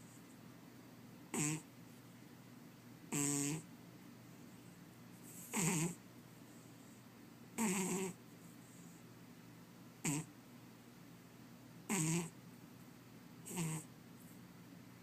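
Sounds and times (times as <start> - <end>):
cat snoring: 1.3 - 1.7, 3.1 - 3.7, 5.3 - 6.0, 7.6 - 8.2, 10.0 - 10.3, 11.9 - 12.4, 13.4 - 13.9.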